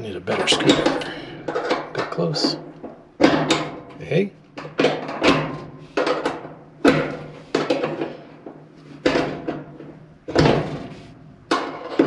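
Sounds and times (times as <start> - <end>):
faint low hum: 0.0 - 2.8.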